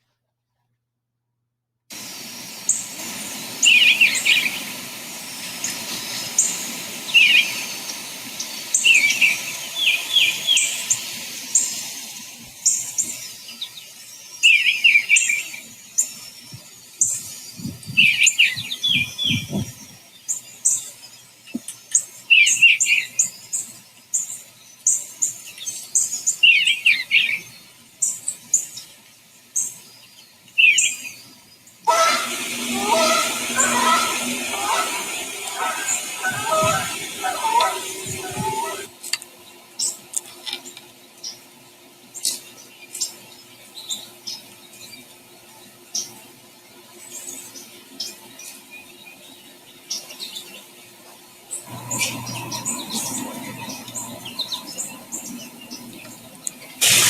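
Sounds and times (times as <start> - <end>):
bluebirds singing: 2.3 - 57.0
high bird chips: 31.9 - 38.9, 56.8 - 57.0.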